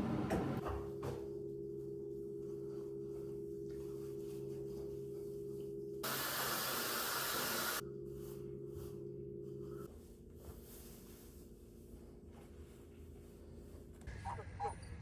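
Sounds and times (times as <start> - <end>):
low tonal hum: 0.3 - 6.0, 7.8 - 15.0
loud hiss: 6.0 - 7.8.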